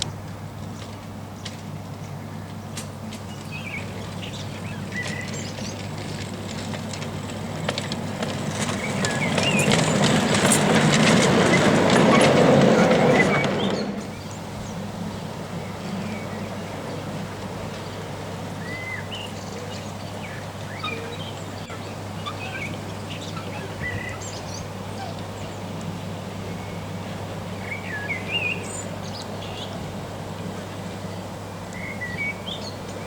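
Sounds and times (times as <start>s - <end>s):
birds chirping: 3.2s - 16.5s.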